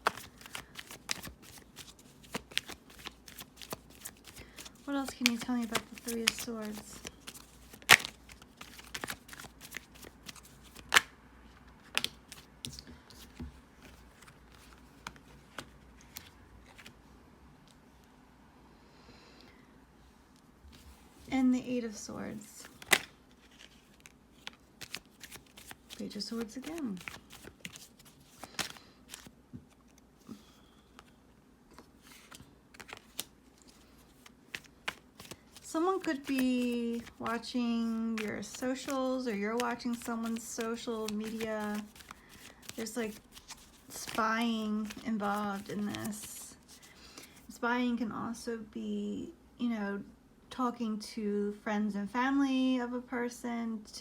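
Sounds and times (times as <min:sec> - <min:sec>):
cards being shuffled: 0:00.0 - 0:11.1, 0:11.8 - 0:17.0, 0:22.3 - 0:30.0, 0:31.8 - 0:47.5.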